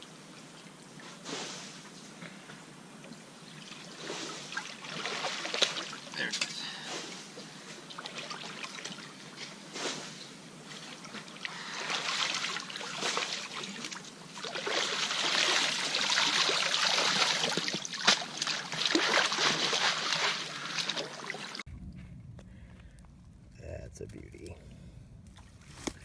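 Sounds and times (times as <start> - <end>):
water splashing through a screen: 3.6 - 21.7
gravel rattling: 21.7 - 26.0.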